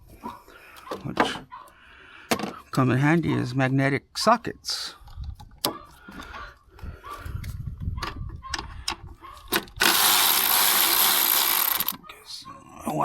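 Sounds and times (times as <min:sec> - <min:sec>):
socket wrench ratcheting: 0:09.8 - 0:12.0.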